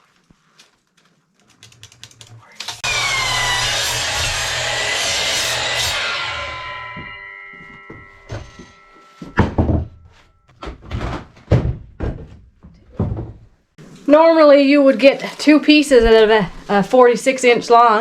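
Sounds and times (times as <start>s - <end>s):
saw blade ringing as it spins down: 2.8s - 10.3s
wooden boards knocking: 9.2s - 13.5s.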